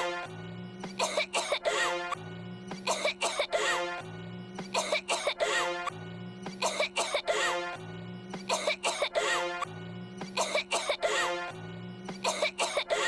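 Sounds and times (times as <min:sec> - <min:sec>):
steady low tone: 0:00.0 - 0:01.0, 0:02.0 - 0:03.0, 0:03.8 - 0:05.0, 0:05.8 - 0:06.8, 0:07.6 - 0:08.7, 0:09.6 - 0:10.4, 0:11.4 - 0:12.3
quick coughs: 0:00.8 - 0:01.8, 0:02.7 - 0:03.6, 0:04.6 - 0:05.6, 0:06.5 - 0:07.5, 0:08.4 - 0:11.4, 0:12.1 - 0:13.0.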